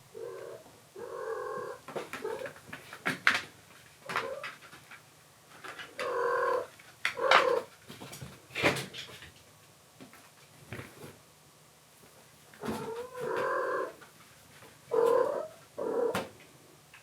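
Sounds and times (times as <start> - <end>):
kittens meowing: 14.9 - 16.2.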